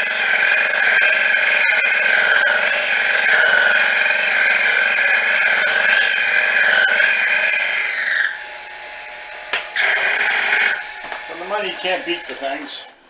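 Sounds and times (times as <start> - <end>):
milling machine whine: 0.0 - 13.0.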